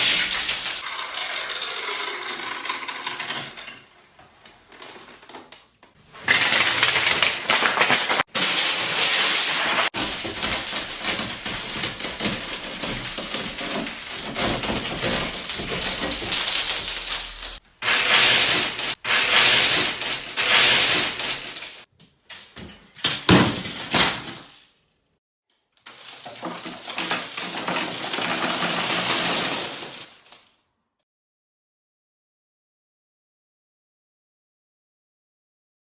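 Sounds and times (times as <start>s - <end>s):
brittle glassy crunching: 6.3s - 21.9s, 25.8s - 30.6s.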